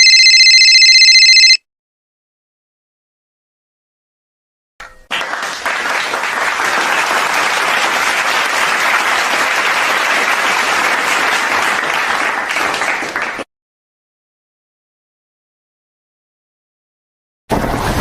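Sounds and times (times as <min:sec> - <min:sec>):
crowd clapping: 0:05.1 - 0:13.5.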